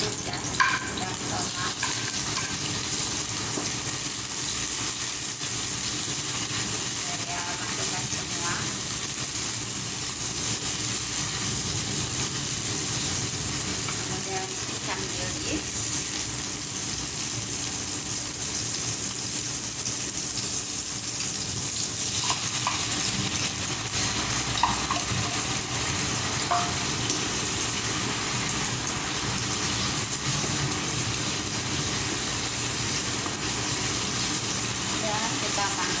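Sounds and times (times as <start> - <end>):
food sizzling in hot oil: 0.0 - 36.0
spatula scraping and knocking pan: 0.5 - 2.9, 26.4 - 27.1.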